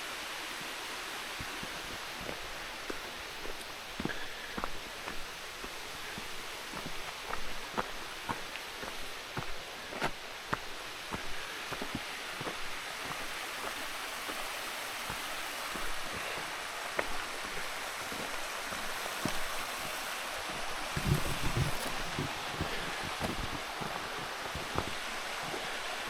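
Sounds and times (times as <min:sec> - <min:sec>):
steady rushing hiss: 0:00.0 - 0:26.0
footsteps on forest trail: 0:00.5 - 0:26.0.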